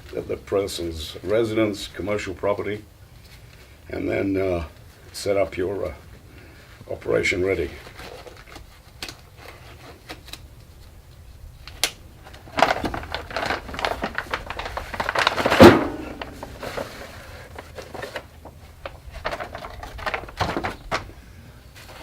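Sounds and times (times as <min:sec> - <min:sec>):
handling clicks and rustling: 0:06.8 - 0:22.0.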